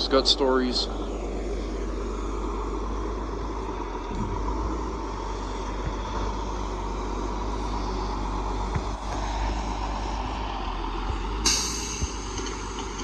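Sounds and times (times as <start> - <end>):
diesel truck engine running: 0.0 - 13.0
compressed air hiss: 11.3 - 12.4.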